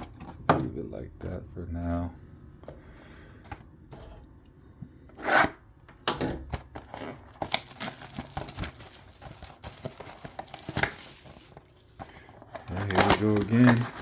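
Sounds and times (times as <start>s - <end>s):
cardboard and wrapper rustling: 6.6s - 14.0s
packaging ripping: 6.8s - 11.8s, 12.6s - 14.0s.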